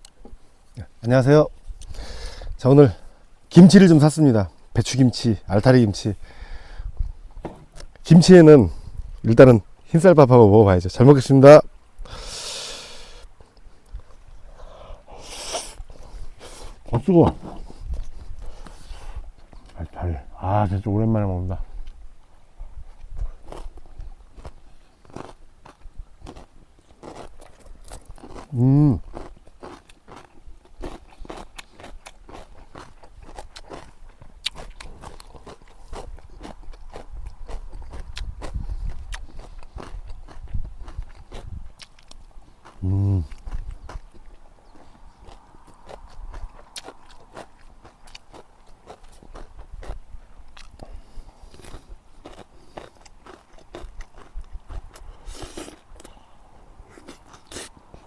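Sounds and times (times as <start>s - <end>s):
crunching and chewing food: 17.5s - 20.1s, 21.6s - 58.0s.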